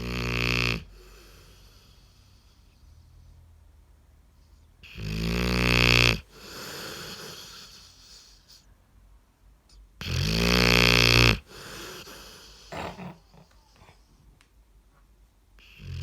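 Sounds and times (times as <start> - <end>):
dog snoring: 0.0 - 3.0, 4.8 - 8.6, 10.0 - 14.1, 15.6 - 16.0.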